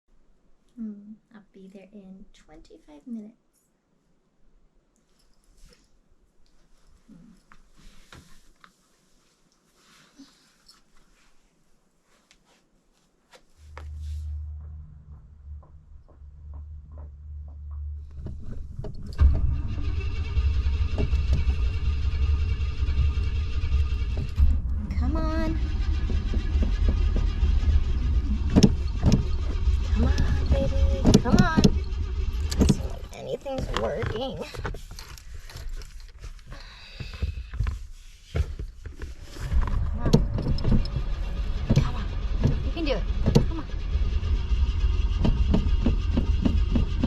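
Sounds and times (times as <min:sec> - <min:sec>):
clicks and knocks: 0:14.5 - 0:22.0, 0:25.6 - 0:36.2
car engine cranking without starting: 0:14.7 - 0:36.1, 0:39.5 - 0:47.0.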